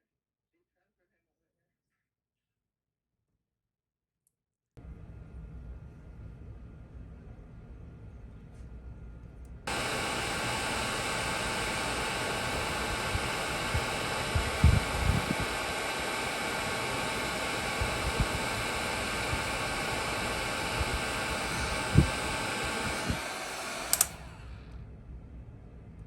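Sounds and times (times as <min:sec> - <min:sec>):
hot air gun fan hissing: 0:09.7 - 0:24.7.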